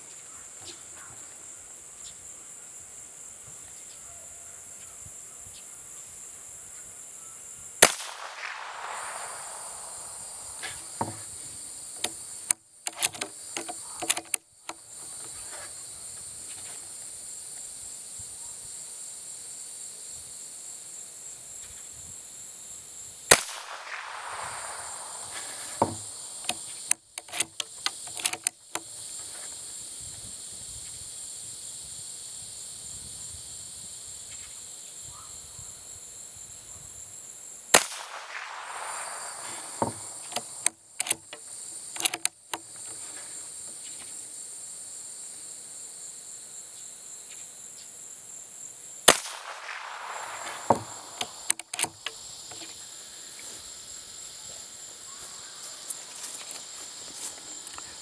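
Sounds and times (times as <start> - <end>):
insects chirring: 0.0 - 58.0
rifle shot with echo: 7.8 - 11.0, 23.3 - 26.5, 37.7 - 40.7, 49.1 - 51.5
rifle bolt clicking: 12.9 - 14.4, 23.3 - 28.5, 37.8 - 41.4, 42.0 - 42.6, 49.2 - 52.1.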